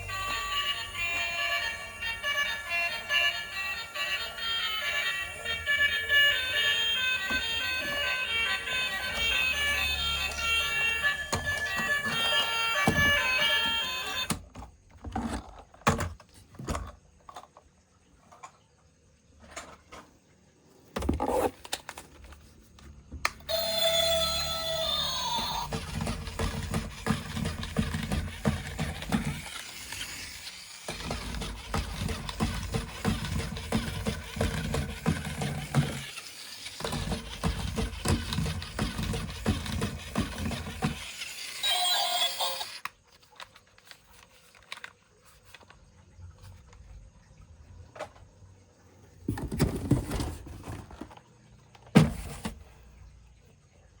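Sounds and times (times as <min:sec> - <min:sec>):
plastic toy clicks and rattles: 0:23.5 - 0:45.7.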